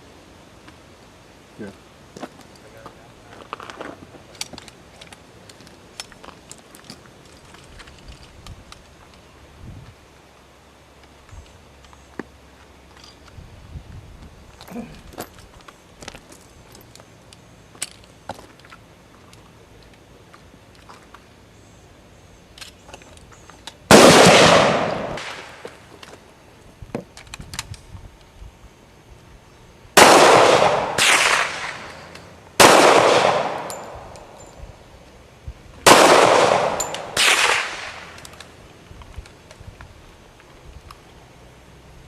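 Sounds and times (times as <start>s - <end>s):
shotgun shots: 23.9s - 25.6s, 30.0s - 34.1s, 35.8s - 38.2s.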